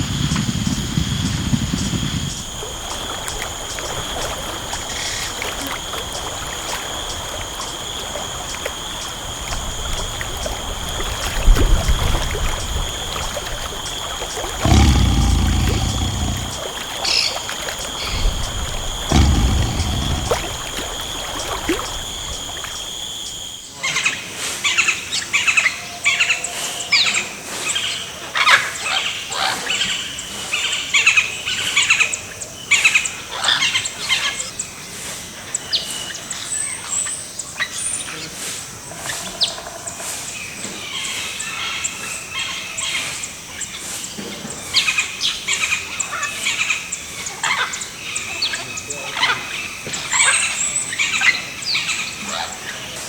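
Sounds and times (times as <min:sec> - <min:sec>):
chorus of birds chirping: 0:12.2 - 0:23.5.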